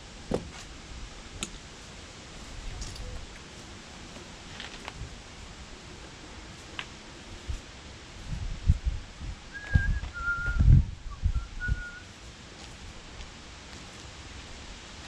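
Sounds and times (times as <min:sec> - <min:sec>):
dull thumps and knocks: 0:00.3 - 0:00.7
short high whistle-like notes: 0:09.5 - 0:12.0.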